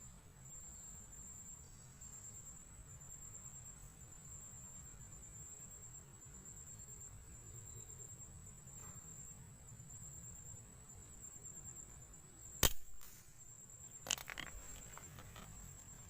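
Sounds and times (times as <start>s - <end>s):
air rifle shot crack: 12.6s - 13.4s.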